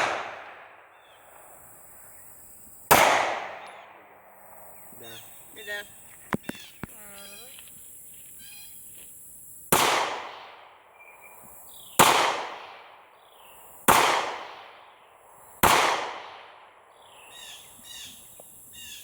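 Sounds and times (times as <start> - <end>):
echoing gunshots: 0.0 - 2.0, 2.9 - 5.2, 9.7 - 17.7.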